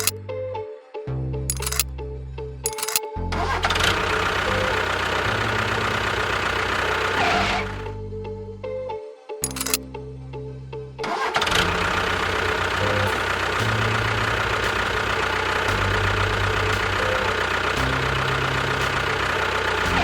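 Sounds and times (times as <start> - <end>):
background music with bass line: 0.1 - 9.1, 9.8 - 11.0, 11.7 - 20.0
engine-like running noise: 2.6 - 8.0, 11.0 - 20.0.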